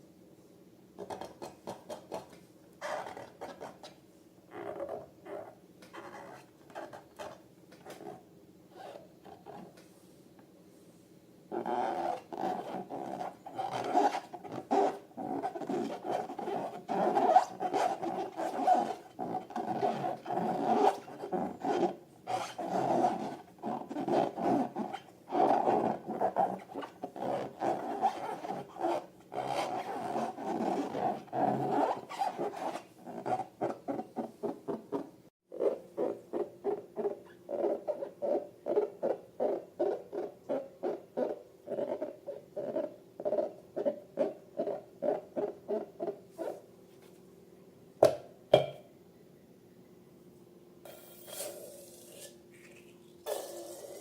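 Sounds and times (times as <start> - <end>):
rubber balloons squeaking: 4.5 - 9.7, 11.5 - 46.6.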